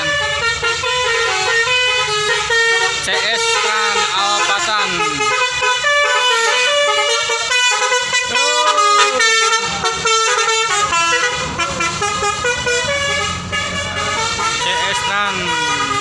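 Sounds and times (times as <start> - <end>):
multi-tone bus horn tune: 0.0 - 16.0.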